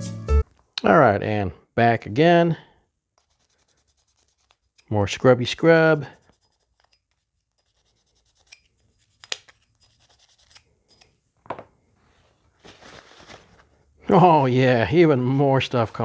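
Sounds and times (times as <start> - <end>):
brush scrubbing metal: 3.2 - 4.9, 5.6 - 11.1.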